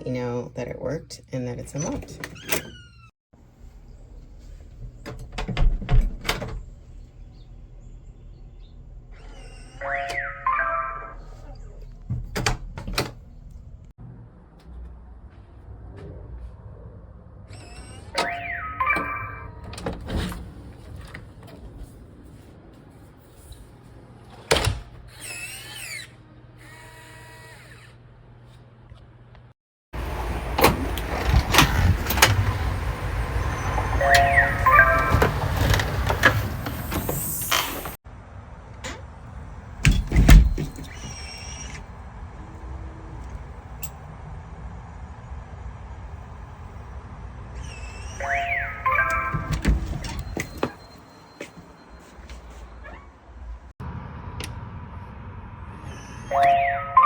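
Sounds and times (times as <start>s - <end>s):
electronic chime tones: 9.8s - 11.2s, 18.2s - 19.6s, 34.0s - 35.3s, 48.2s - 49.6s, 56.3s - 57.0s
lock motor whirring: 24.5s - 28.0s
short electronic chime: 48.2s - 49.5s, 56.3s - 57.0s.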